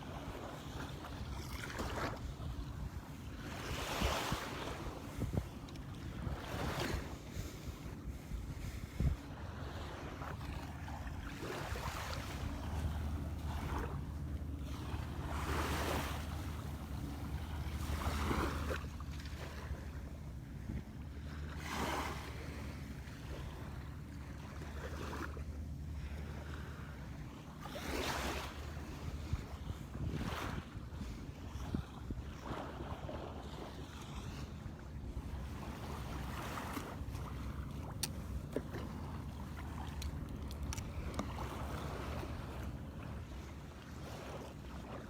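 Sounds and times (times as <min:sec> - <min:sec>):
wind on microphone: 0:00.0 - 0:18.8, 0:27.8 - 0:43.4
low steady hum: 0:00.0 - 0:45.0
small waves washing on beach: 0:00.0 - 0:45.0.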